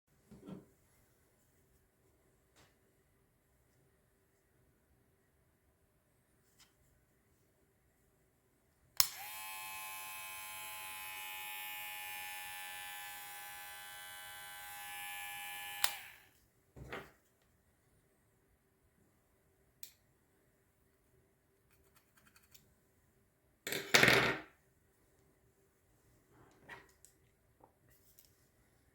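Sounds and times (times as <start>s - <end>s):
trimmer switch click: 9.0s - 9.6s, 14.6s - 16.2s
hair trimmer buzzing: 9.0s - 16.3s.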